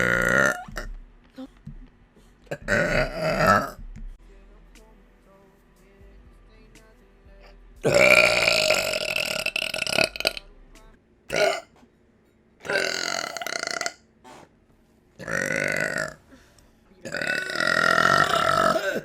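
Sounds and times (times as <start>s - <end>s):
woman burping: 0.0s - 0.9s, 2.5s - 3.8s, 7.9s - 10.4s, 11.3s - 11.7s, 12.6s - 14.0s, 15.2s - 16.3s, 17.0s - 19.0s.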